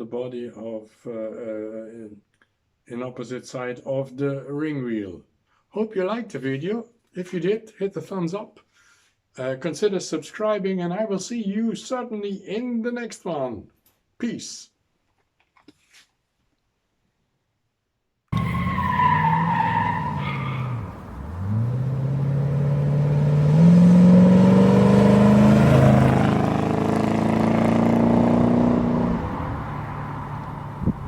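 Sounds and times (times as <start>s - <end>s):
car engine accelerating: 18.4s - 31.0s.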